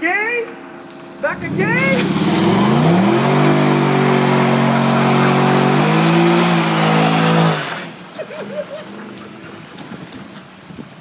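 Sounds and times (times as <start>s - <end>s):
car engine at high revs: 0.7s - 8.1s.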